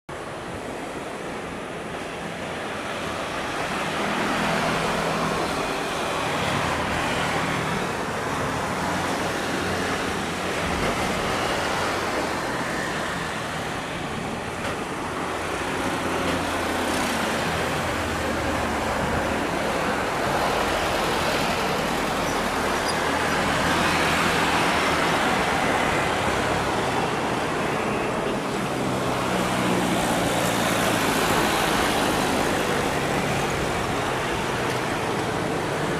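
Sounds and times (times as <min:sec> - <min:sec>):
jet engine noise: 0:00.1 - 0:35.9.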